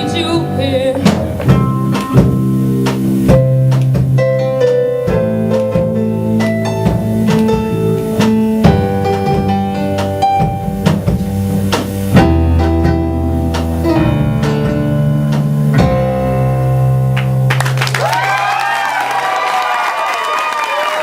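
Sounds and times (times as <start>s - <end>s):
live guitar-led song: 0.0s - 18.0s
audience cheering and applauding: 17.2s - 21.0s.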